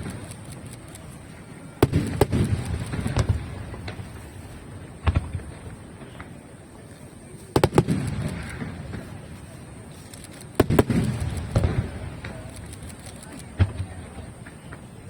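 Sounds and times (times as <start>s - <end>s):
firework shells bursting: 0.0s - 6.4s, 7.5s - 15.0s.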